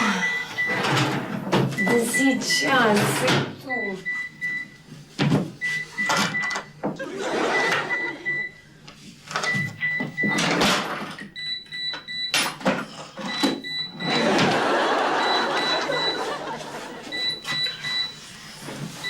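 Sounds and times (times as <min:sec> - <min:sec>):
alarm clock beeping: 0:00.0 - 0:01.0, 0:01.8 - 0:04.7, 0:07.4 - 0:08.6, 0:11.4 - 0:12.4, 0:13.2 - 0:16.4, 0:17.1 - 0:18.2.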